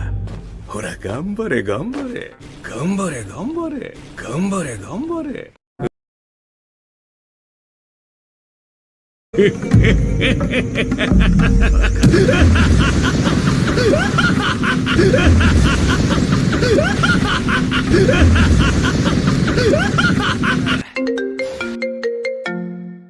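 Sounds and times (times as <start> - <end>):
plucked marimba-like ringtone melody: 20.9 - 23.0.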